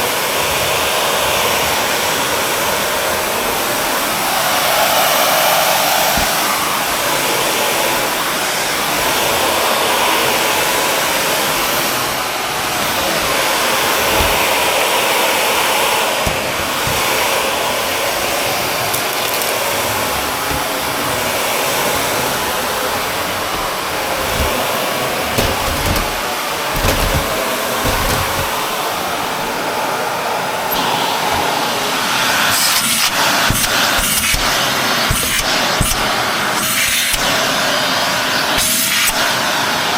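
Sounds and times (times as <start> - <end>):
upright vacuum running: 0.0 - 39.9
clicks and knocks: 14.0 - 14.7, 16.2 - 17.3, 18.2 - 28.8
low bumps: 22.8 - 28.8.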